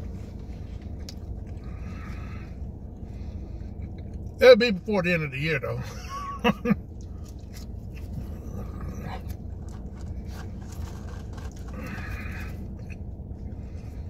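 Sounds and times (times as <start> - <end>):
steady low hum: 0.0 - 14.0
person chewing: 6.9 - 13.6.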